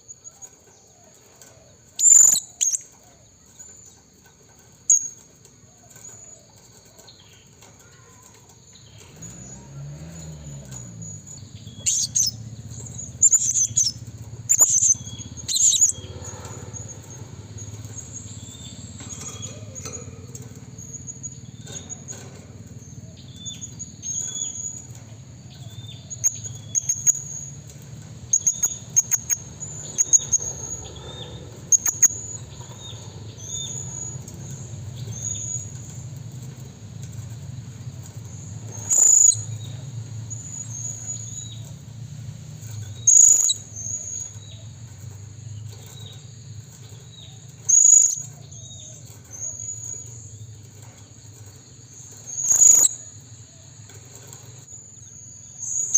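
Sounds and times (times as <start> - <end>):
parrot high sharp chirps: 11.8 - 12.4, 13.2 - 16.0, 28.4 - 30.4, 38.9 - 39.4, 43.1 - 43.6, 52.4 - 53.0.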